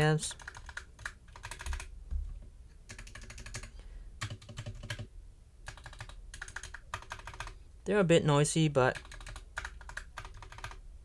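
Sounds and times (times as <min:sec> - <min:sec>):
mechanical keyboard keys clacking: 0:00.3 - 0:01.9, 0:05.7 - 0:07.5, 0:09.0 - 0:10.8.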